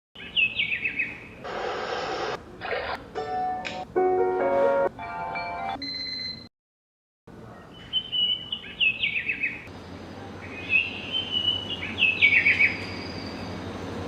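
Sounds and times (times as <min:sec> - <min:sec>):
soft outdoor background: 0:00.2 - 0:06.5, 0:07.3 - 0:14.0
bird chirping and trilling: 0:07.7 - 0:09.6.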